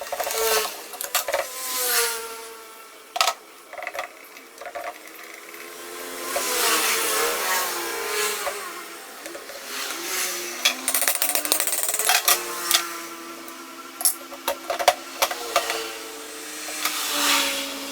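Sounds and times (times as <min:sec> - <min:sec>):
motor with wavering pitch: 0:05.2 - 0:13.9.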